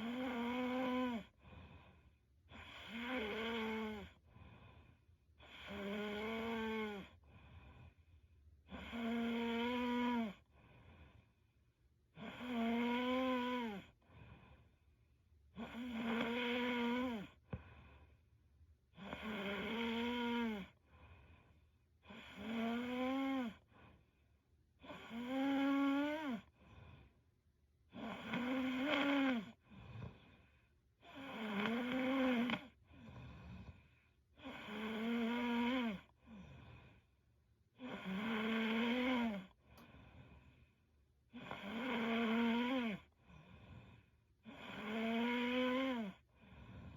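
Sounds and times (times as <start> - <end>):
woman snoring: 0.0 - 1.6, 2.5 - 4.2, 5.4 - 7.3, 8.7 - 10.5, 12.2 - 14.0, 15.6 - 17.6, 19.0 - 20.8, 22.0 - 23.9, 24.8 - 27.1, 27.9 - 37.1, 37.8 - 40.5, 41.3 - 46.9
soft breathing: 1.3 - 2.4, 4.2 - 5.3, 7.1 - 8.4, 10.4 - 11.7, 13.9 - 15.0, 17.3 - 18.4, 20.7 - 21.8, 26.4 - 27.3, 29.5 - 30.8, 32.6 - 34.3, 36.0 - 37.3, 39.5 - 41.0, 43.0 - 44.3.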